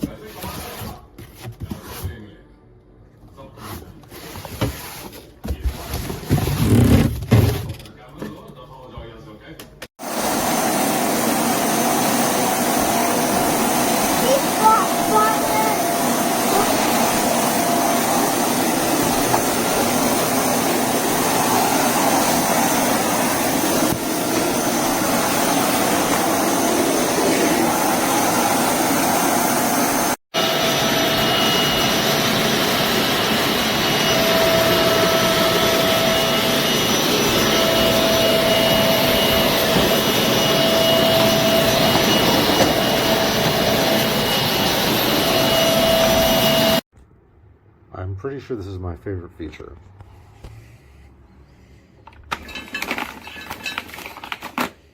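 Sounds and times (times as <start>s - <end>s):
vacuum cleaner running: 10.0s - 46.8s.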